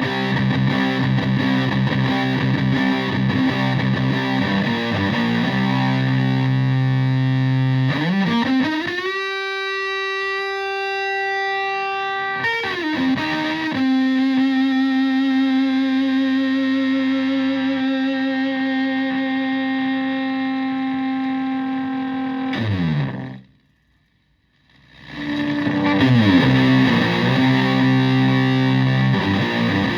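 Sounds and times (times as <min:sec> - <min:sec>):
fuzzed electric guitar notes: 0:00.0 - 0:23.8, 0:24.8 - 0:29.9.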